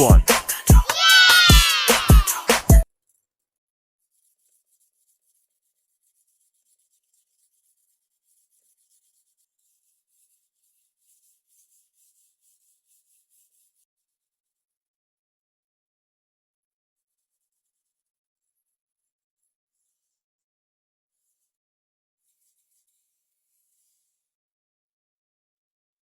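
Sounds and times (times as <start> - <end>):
music: 0.0 - 2.8.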